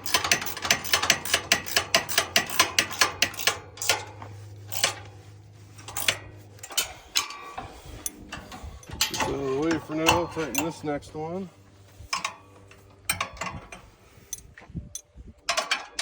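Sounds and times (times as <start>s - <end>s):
ratchet wrench clicking: 0.0s - 5.1s, 5.8s - 7.4s
low hum: 0.3s - 16.0s.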